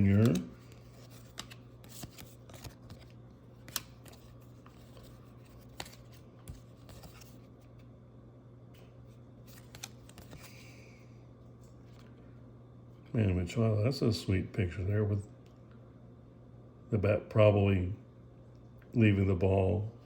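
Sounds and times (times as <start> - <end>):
trading cards being handled: 0.0 - 7.9, 8.8 - 11.0
low steady hum: 0.0 - 20.0.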